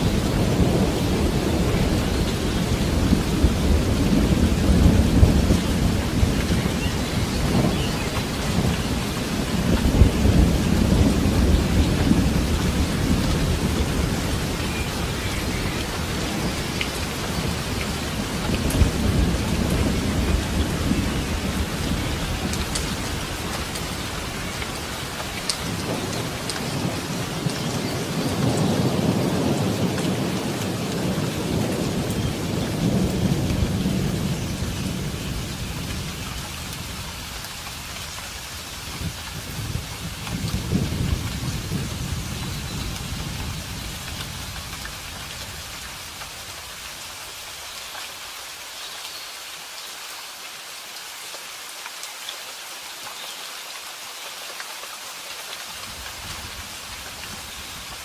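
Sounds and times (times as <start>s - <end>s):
rolling thunder: 0.0s - 37.2s, 39.0s - 44.8s
steady rain falling: 0.0s - 58.0s.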